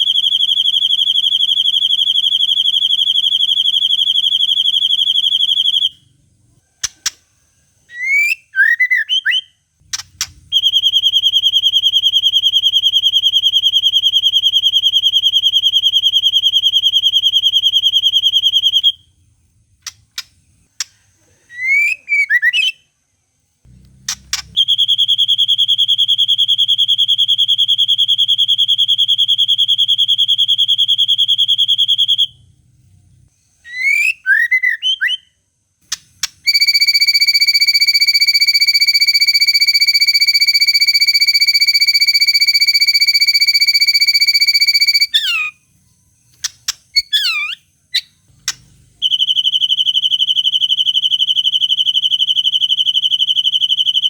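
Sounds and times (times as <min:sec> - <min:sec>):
bird rising chirps and clicks: 0:08.0 - 0:12.2, 0:19.8 - 0:21.0, 0:23.7 - 0:27.5, 0:46.3 - 0:54.0.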